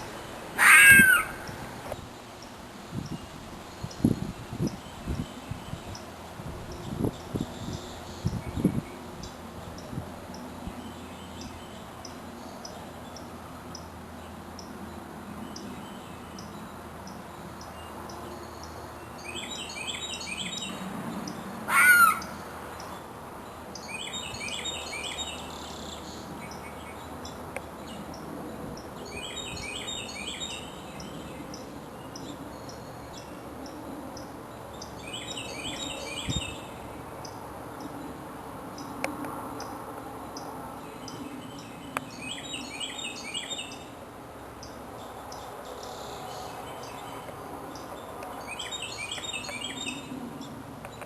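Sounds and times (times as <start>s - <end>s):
harsh bird call: 0.6s - 1.6s, 21.7s - 22.3s
songbird chirping: 40.3s - 51.0s.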